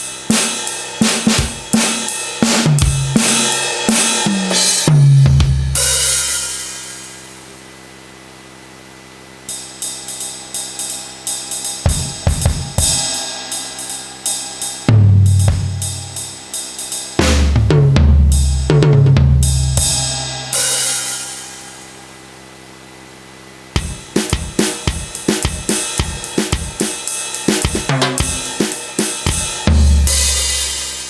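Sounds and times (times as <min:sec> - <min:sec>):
cymbal crash: 0:00.0 - 0:07.6, 0:09.5 - 0:22.1, 0:23.8 - 0:31.0
electronic drum hits: 0:00.3 - 0:06.7, 0:11.8 - 0:13.7, 0:14.8 - 0:16.4, 0:17.2 - 0:20.2, 0:23.8 - 0:31.0
low tom thuds: 0:14.9 - 0:16.2.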